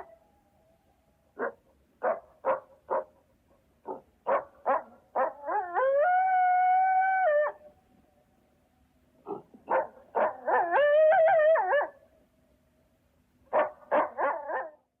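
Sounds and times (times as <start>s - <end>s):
dog barking: 1.4s - 5.4s, 9.2s - 10.8s, 13.5s - 14.8s
dog howling: 10.2s - 12.0s.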